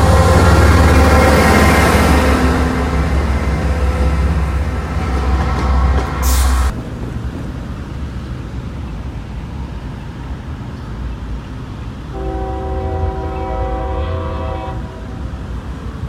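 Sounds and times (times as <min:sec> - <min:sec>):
train horn blast: 0:00.0 - 0:06.7, 0:12.1 - 0:15.2
low rumble of train: 0:00.0 - 0:16.0.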